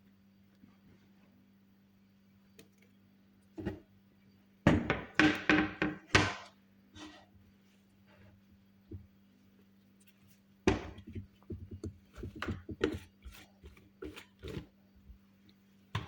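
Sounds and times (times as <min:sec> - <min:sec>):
faint steady hum: 0:00.0 - 0:16.0
hard knocks and thuds: 0:04.7 - 0:06.4, 0:10.7 - 0:13.0.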